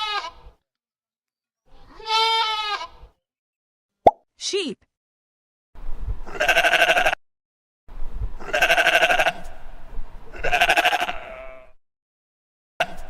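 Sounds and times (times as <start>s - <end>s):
sheep bleating: 0.0s - 0.4s, 1.8s - 3.0s, 6.3s - 7.2s, 8.4s - 9.5s, 10.3s - 11.8s.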